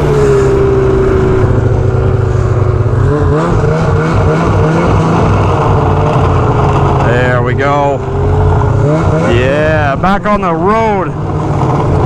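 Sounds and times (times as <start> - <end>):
snowmobile engine running: 0.0 - 12.0.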